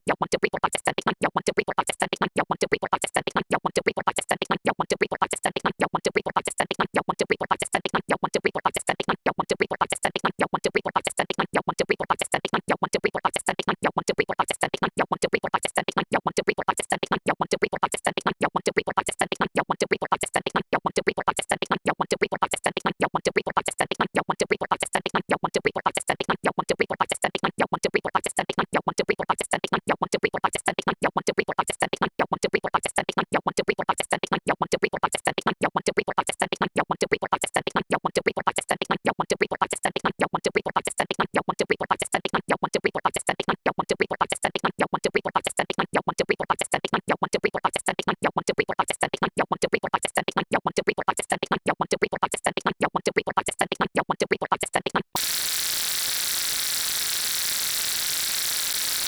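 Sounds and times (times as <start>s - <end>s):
static hiss: 55.2s - 59.0s
stuttering electronic buzz: 55.2s - 59.0s.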